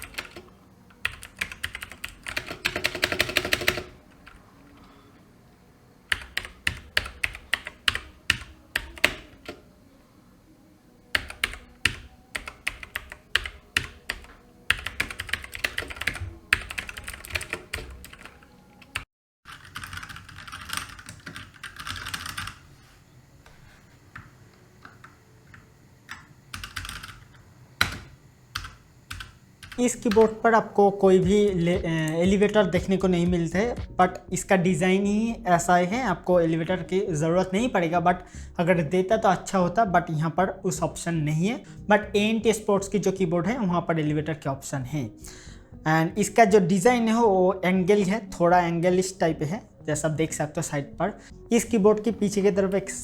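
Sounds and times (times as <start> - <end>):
mechanical keyboard typing: 0.0 - 4.4, 6.1 - 9.6, 11.1 - 22.7, 26.1 - 30.4.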